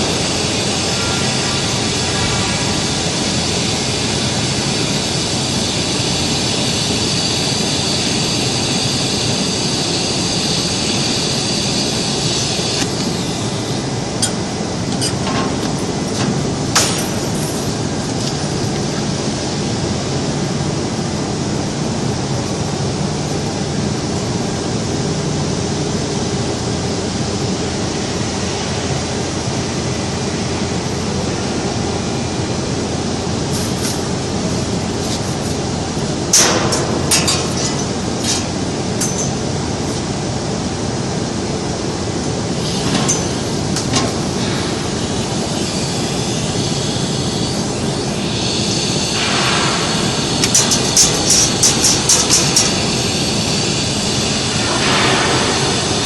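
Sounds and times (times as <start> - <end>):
welding arc hissing: 0.0 - 19.5, 42.6 - 56.0
industrial machinery noise: 0.0 - 56.0.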